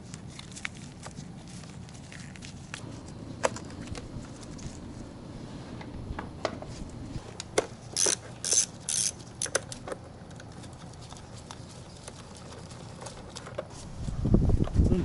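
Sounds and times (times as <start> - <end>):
ratchet wrench ratcheting: 7.9 - 9.8
metal tools clicking: 8.0 - 11.2.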